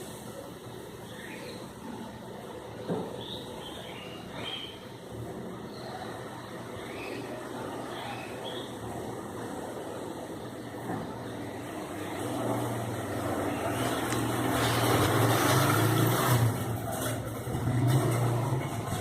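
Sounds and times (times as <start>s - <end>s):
vehicle engine humming: 11.2s - 19.0s.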